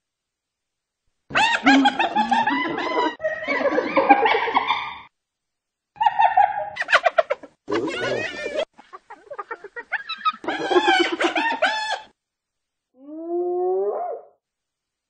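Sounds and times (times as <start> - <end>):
hyenas cackling: 1.3 - 5.1, 6.0 - 12.1.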